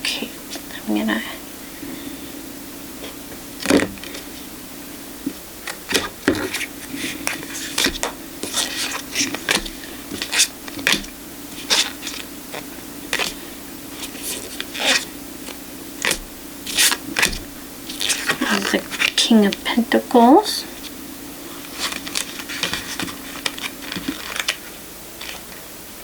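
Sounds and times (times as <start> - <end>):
cards being shuffled by hand: 3.0 - 4.5, 5.6 - 19.6, 20.7 - 25.6.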